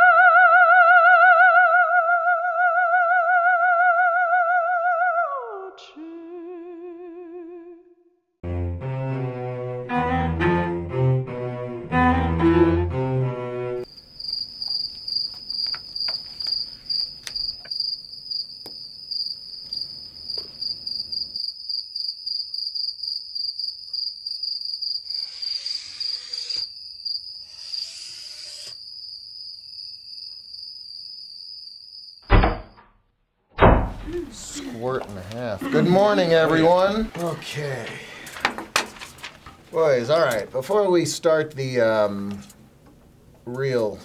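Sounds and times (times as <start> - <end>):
crickets chirping: 13.8 - 32.8
loud thump: 32.3 - 32.9, 33.6 - 34.2.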